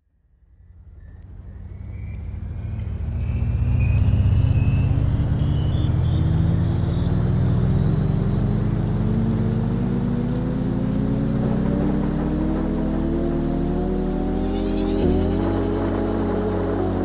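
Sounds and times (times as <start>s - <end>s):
low engine-like drone: 0.0s - 17.0s.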